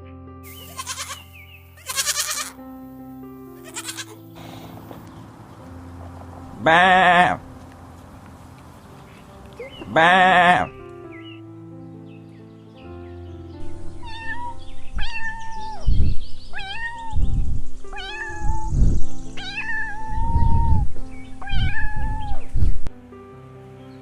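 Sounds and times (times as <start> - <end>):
background music: 0.0 - 24.0
cat meowing: 0.7 - 1.2, 1.8 - 2.6, 3.6 - 4.2, 9.7 - 10.8, 14.0 - 17.3, 17.9 - 18.8, 19.4 - 22.5.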